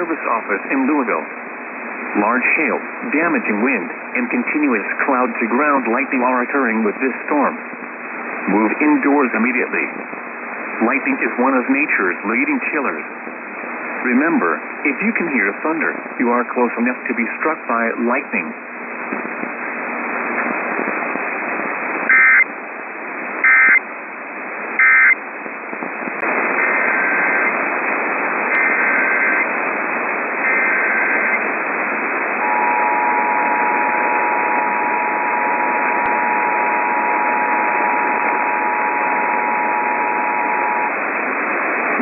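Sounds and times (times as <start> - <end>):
radio static: 0.0 - 42.0
data bursts: 22.1 - 22.5, 23.4 - 23.8, 28.5 - 29.5, 30.4 - 31.5, 32.4 - 41.0
two-tone attention signal: 32.4 - 40.9.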